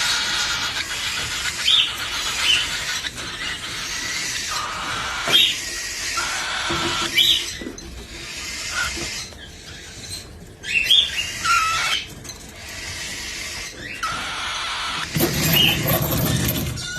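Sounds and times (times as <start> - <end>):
small bird squeaky calls: 0.0 - 16.9.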